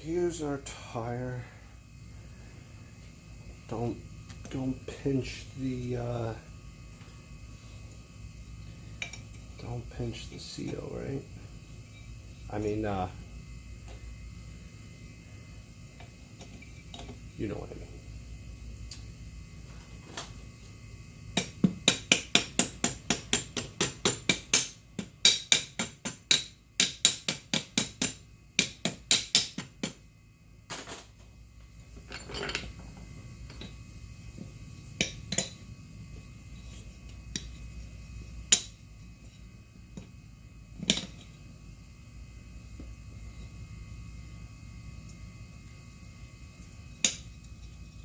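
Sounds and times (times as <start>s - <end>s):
rapid hammer strikes on metal: 21.4s - 30.0s
knocks and clinks: 32.1s - 32.7s.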